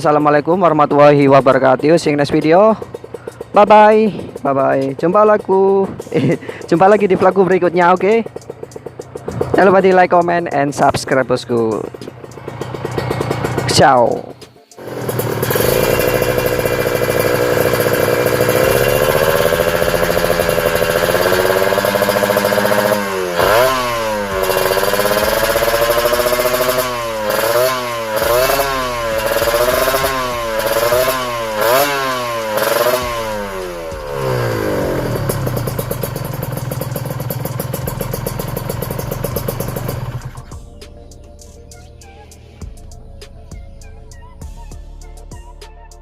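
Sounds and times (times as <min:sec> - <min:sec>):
two-stroke engine revving: 0:00.0 - 0:40.7.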